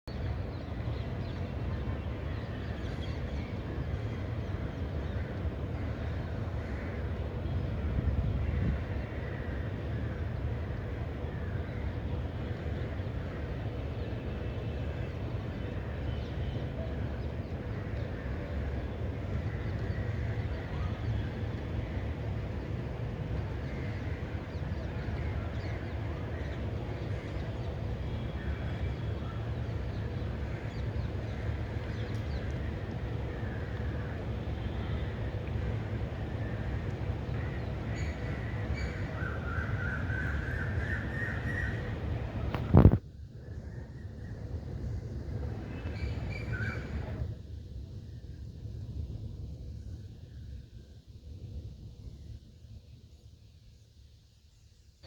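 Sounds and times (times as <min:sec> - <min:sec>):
rain: 0:24.2 - 0:41.3.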